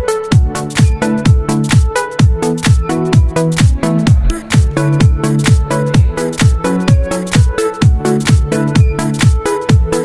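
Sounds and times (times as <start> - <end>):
electronic dance music: 3.5 - 7.5.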